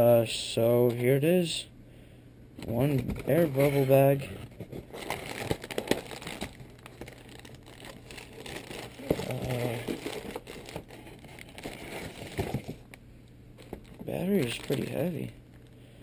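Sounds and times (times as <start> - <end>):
bubble wrap bag crinkling: 4.7 - 13.0, 13.6 - 15.8.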